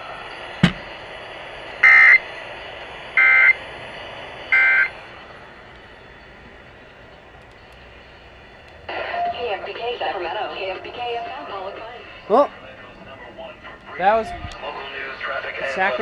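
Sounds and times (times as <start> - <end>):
sharp click: 0.6 - 0.9.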